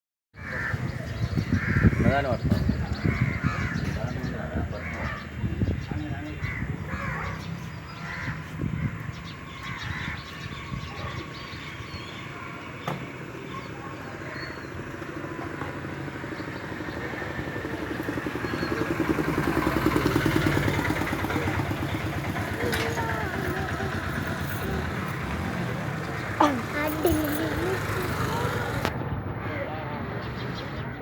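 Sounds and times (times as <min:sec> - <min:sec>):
motor vehicle engine running: 0:13.0 - 0:29.3.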